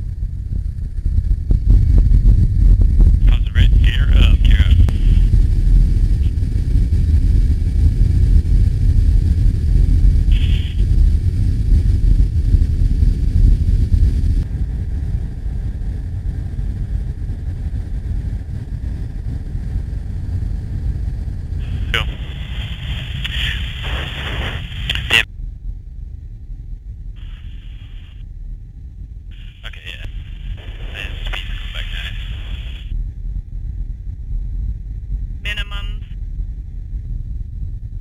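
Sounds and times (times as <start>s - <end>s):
jet engine rumble: 0.0s - 38.0s
radio voice: 3.2s - 5.3s, 10.3s - 10.8s, 21.6s - 25.3s, 27.2s - 28.2s, 29.4s - 32.9s, 35.5s - 36.1s.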